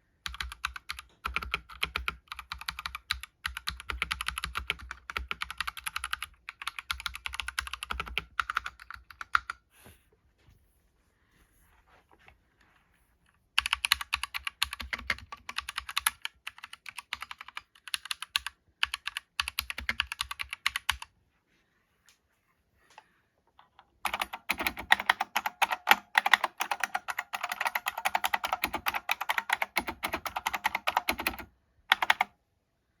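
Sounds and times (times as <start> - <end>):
mechanical keyboard typing: 0.2 - 9.6, 13.6 - 21.1, 23.9 - 32.4.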